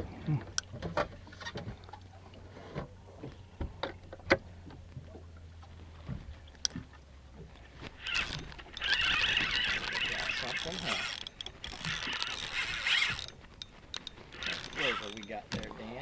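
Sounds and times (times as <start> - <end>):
knocks and clatter on boat: 0.0 - 16.0
fishing reel rattling: 7.8 - 16.0.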